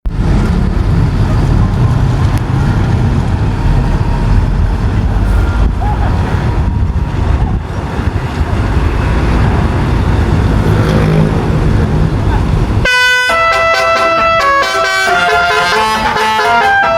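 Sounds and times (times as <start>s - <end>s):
heavy engine: 0.0s - 16.9s
traffic passing: 0.0s - 16.9s.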